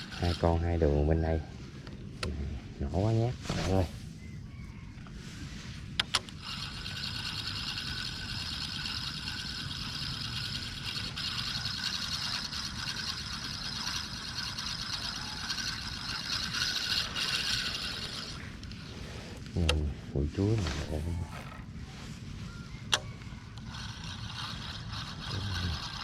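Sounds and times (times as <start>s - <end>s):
reel clicks: 0.0s - 0.8s, 6.0s - 18.8s, 22.9s - 26.0s
fishing reel gear whirring: 0.0s - 1.5s, 6.2s - 19.5s, 20.4s - 21.7s, 22.9s - 26.0s.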